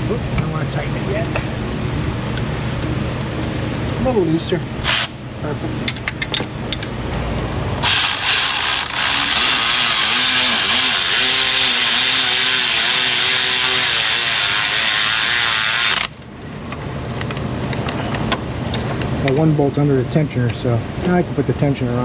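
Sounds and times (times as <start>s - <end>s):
cordless power tool motor: 7.8s - 16.2s.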